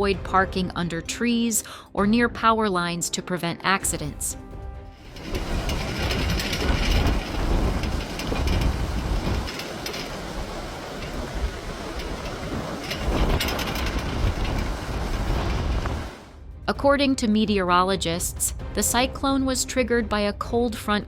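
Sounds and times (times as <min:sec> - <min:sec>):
storm wind rush and rumble: 0:04.0 - 0:17.9.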